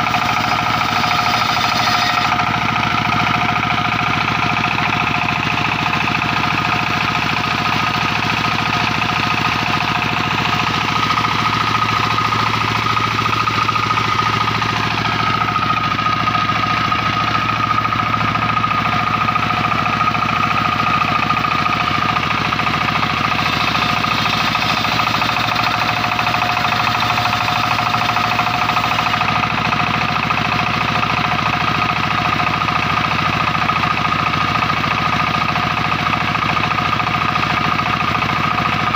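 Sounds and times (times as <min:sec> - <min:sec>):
high-pitched saw whine: 0:00.0 - 0:03.5, 0:23.3 - 0:29.5
sawmill machine drone: 0:00.0 - 0:38.9.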